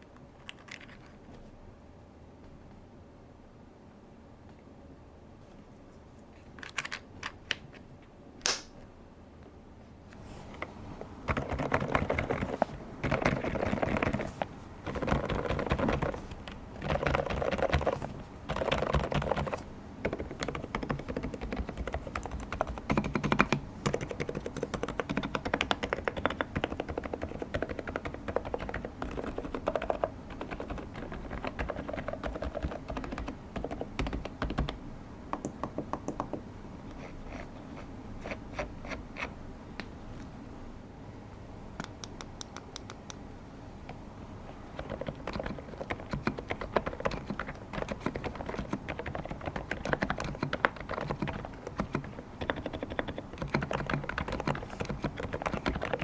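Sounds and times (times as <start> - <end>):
typing on mechanical keyboard: 11.3 - 34.8, 44.7 - 56.0.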